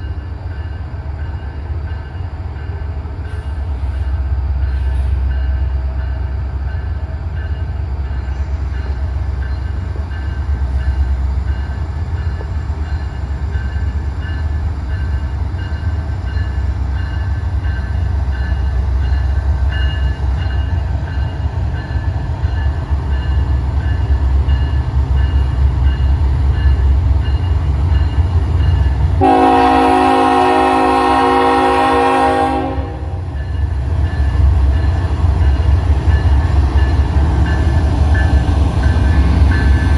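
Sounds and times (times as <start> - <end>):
train rumbling: 0.0 - 39.9
locomotive air horn: 29.2 - 33.2.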